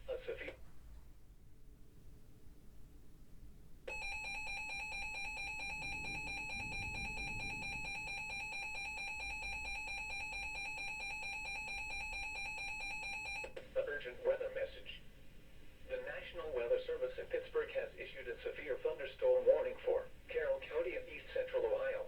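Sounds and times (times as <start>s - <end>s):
two-tone alarm: 3.9s - 13.5s.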